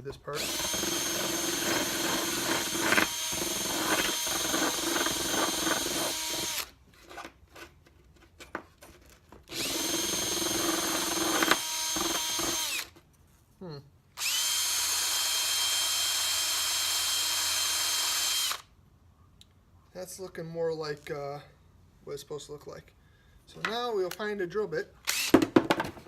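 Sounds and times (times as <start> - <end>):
drill sanding drum on wood: 0.3 - 6.7, 9.6 - 12.8.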